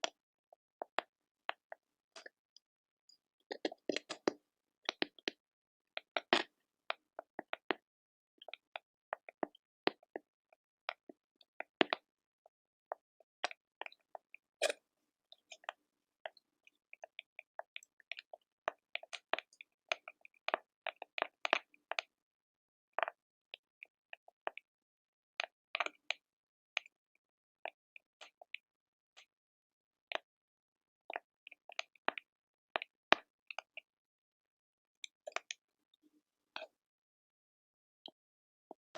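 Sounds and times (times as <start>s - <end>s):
soft crackles and clicks: 3.1s - 5.4s, 10.9s - 12.0s, 15.4s - 22.1s, 35.0s - 35.6s.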